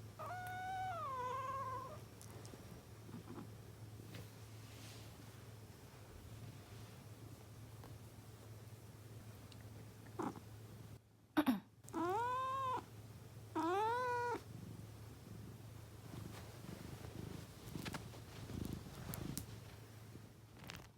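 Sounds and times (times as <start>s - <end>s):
cat meowing: 0.2s - 2.0s, 11.9s - 12.8s, 13.6s - 14.4s
person clearing throat: 11.4s - 11.7s.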